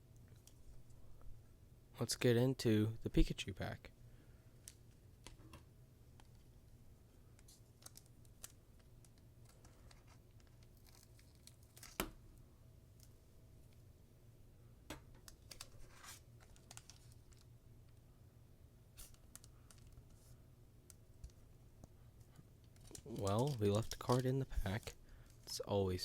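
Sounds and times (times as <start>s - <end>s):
foil wrapper tearing and crinkling: 9.9s - 12.0s, 15.3s - 17.5s, 22.8s - 25.6s.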